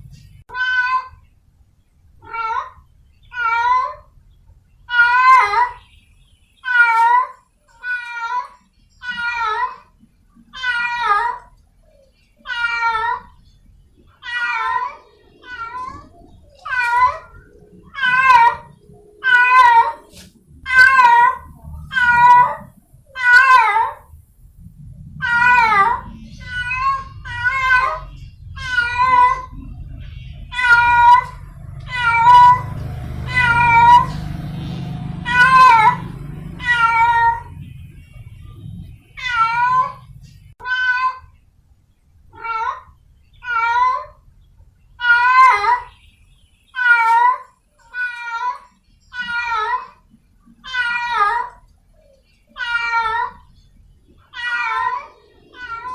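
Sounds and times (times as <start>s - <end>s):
cat yowling: 0.5s - 1.2s, 2.2s - 4.2s, 4.9s - 5.8s, 6.6s - 9.9s, 10.5s - 13.4s, 14.2s - 24.1s, 25.2s - 29.8s, 30.5s - 37.6s, 39.0s - 41.3s, 42.3s - 44.2s, 45.0s - 45.9s, 46.8s - 50.0s, 50.6s - 51.7s, 52.5s - 53.5s, 54.3s - 55.9s.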